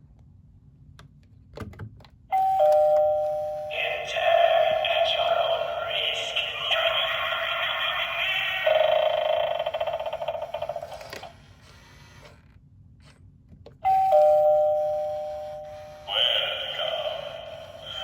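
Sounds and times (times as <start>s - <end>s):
warbling electronic doorbell tune: 2.3s - 6.3s, 8.5s - 10.4s, 13.9s - 16.3s.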